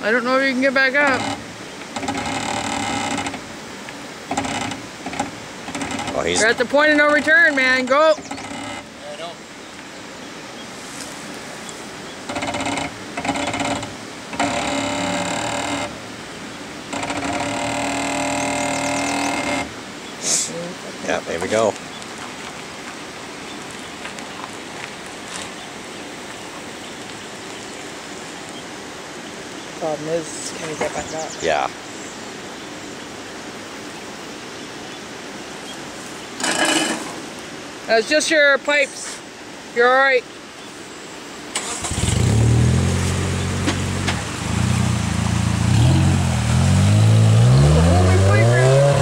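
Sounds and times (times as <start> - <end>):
engine and tyres rumbling: 0.0 - 20.2, 35.7 - 37.4, 41.5 - 49.0.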